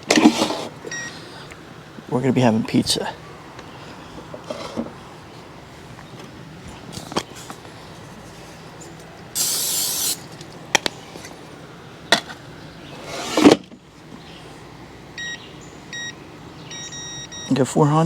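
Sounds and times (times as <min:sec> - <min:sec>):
electronic beeps: 0:00.9 - 0:01.2, 0:15.2 - 0:17.7
oil spray hissing from can: 0:09.4 - 0:10.4.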